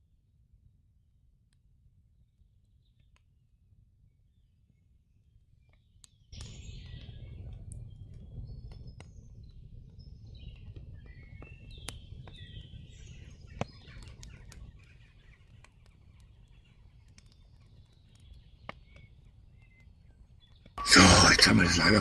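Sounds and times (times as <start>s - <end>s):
wood fire crackling and popping: 5.7s - 22.0s
birds chirping: 10.4s - 22.0s.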